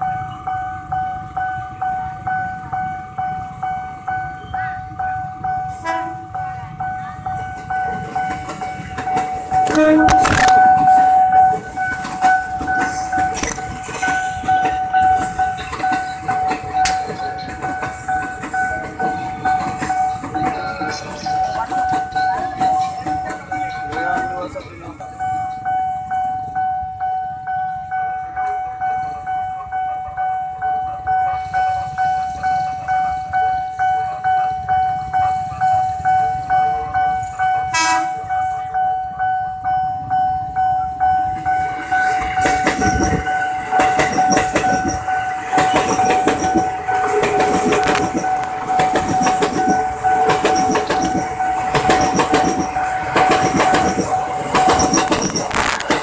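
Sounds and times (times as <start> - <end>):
level crossing warning bell: 0.0 - 56.0
train wheels clattering on rails: 7.4 - 25.6, 41.2 - 56.0.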